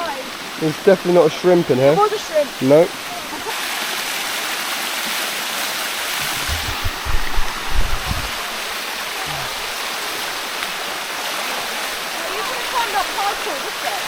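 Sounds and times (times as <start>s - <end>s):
waterfall cascading over rock: 0.0s - 14.0s
low thumps: 6.2s - 8.6s.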